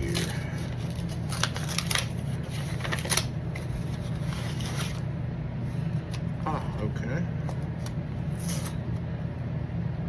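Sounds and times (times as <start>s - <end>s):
paper tearing: 0.0s - 5.0s
paper rustling: 0.0s - 5.1s.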